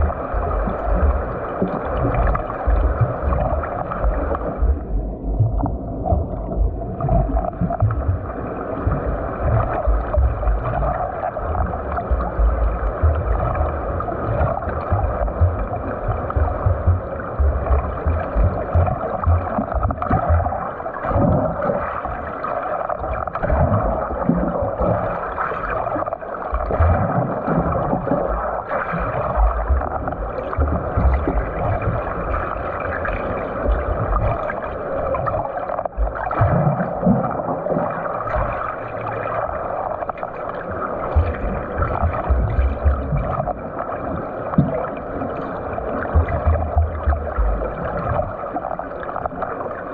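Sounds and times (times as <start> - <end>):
low thumps on water: 0.0 - 21.6, 26.5 - 37.5, 41.1 - 43.6, 44.5 - 44.9, 46.0 - 48.4
water churning and splashing: 0.0 - 49.9.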